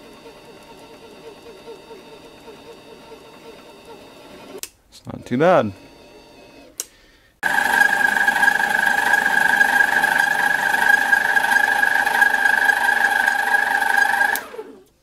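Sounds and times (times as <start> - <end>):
metal lathe motor whining: 7.4 - 14.9.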